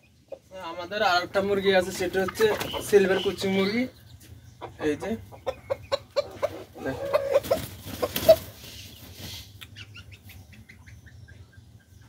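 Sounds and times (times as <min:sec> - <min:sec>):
chickens clucking and squawking: 0:00.0 - 0:12.0
wings flapping: 0:02.2 - 0:03.1, 0:07.3 - 0:09.5.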